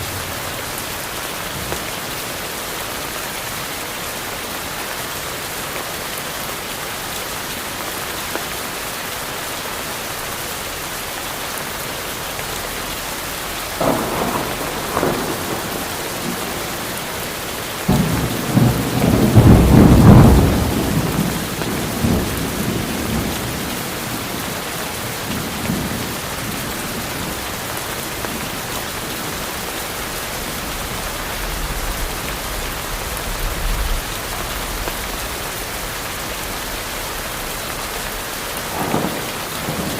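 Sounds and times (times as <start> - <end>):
steady rain: 0.0 - 39.9
thunder rumbling: 13.7 - 29.5, 30.6 - 39.9.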